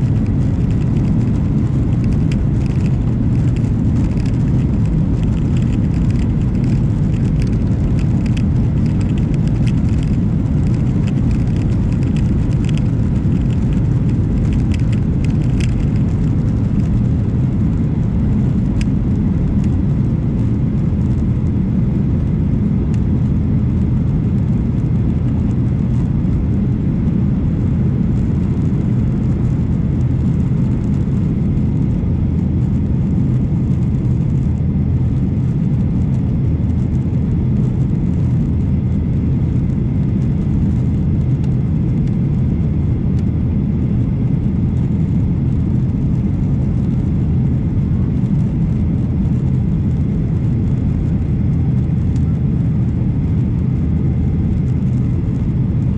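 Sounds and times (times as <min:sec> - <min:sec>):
jet engine low rumble: 0:00.0 - 0:55.9
light clicks and rattles: 0:01.9 - 0:16.9.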